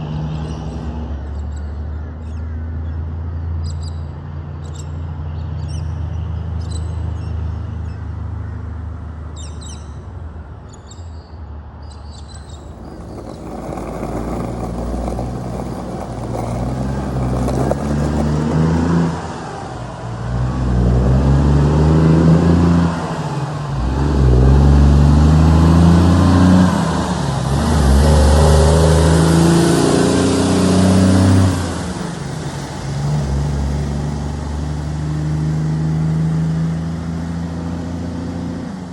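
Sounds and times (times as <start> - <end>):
diesel truck accelerating through gears: 16.2 - 38.9.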